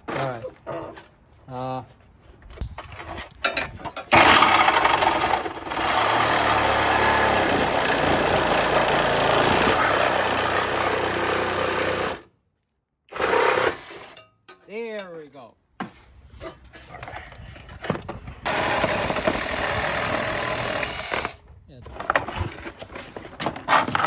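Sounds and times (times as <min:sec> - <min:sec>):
power tool running: 0:04.1 - 0:12.3, 0:13.1 - 0:14.2, 0:18.5 - 0:21.4.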